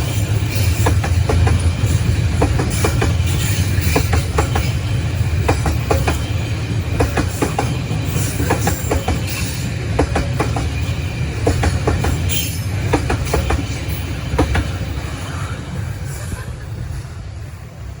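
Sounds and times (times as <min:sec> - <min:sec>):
train wheels clacking over rail joints: 0:00.0 - 0:15.5
deep train rumble: 0:00.0 - 0:18.0.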